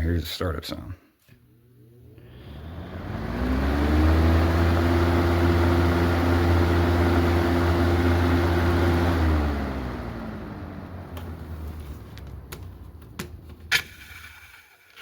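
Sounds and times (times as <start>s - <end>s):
box fan motor humming: 1.8s - 13.7s.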